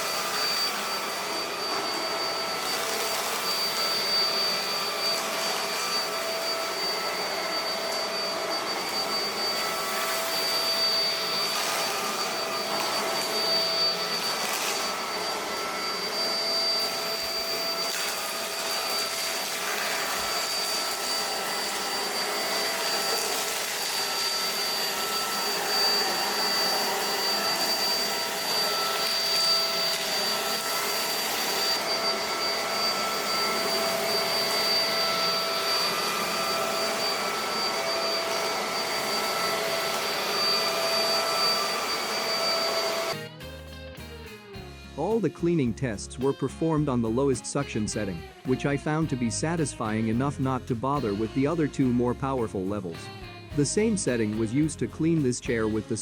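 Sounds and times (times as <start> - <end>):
stick vacuum running: 0.0 - 43.2.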